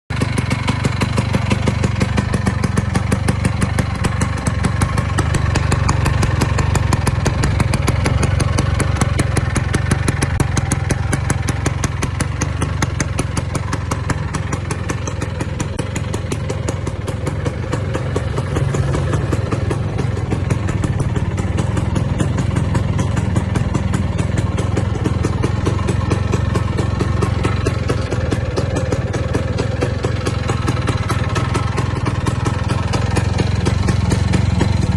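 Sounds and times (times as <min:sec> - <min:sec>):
scooter engine idling: 0:00.1 - 0:34.9.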